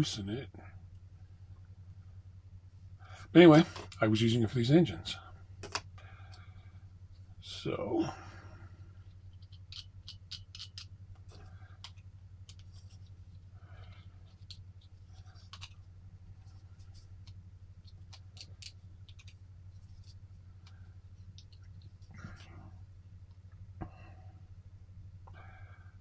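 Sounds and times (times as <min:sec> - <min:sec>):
steady low hum: 0:00.0 - 0:26.0
small clicks and scratches: 0:09.0 - 0:22.6.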